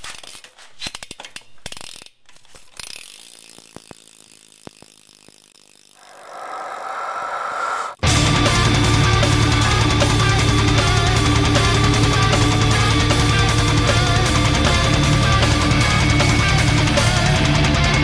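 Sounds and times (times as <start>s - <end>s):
bicycle hub ratcheting clicks: 0.0s - 6.8s
unidentified sound: 0.1s - 8.0s.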